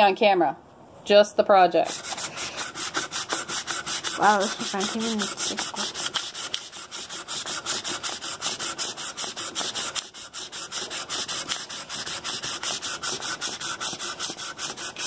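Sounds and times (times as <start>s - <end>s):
sandpaper rubbing on wood: 1.8s - 15.0s.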